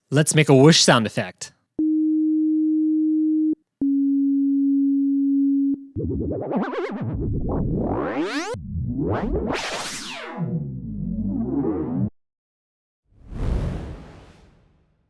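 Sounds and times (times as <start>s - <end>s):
sine tone: 1.8s - 6.0s.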